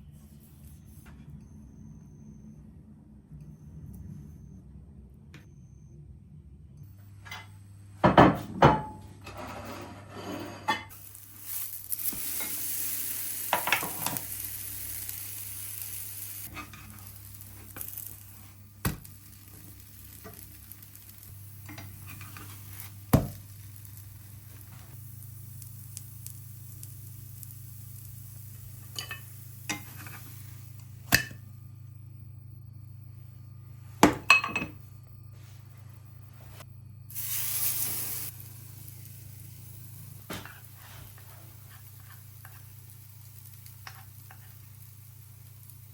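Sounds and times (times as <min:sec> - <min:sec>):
steady low hum: 0:00.0 - 0:10.0, 0:10.6 - 0:45.9
hissing: 0:11.0 - 0:30.8, 0:37.0 - 0:45.9.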